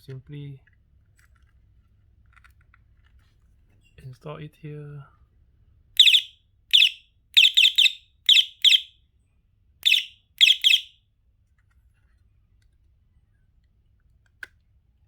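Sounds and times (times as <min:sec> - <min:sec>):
electronic bicycle horn beeps: 0:06.0 - 0:08.9, 0:09.8 - 0:10.9.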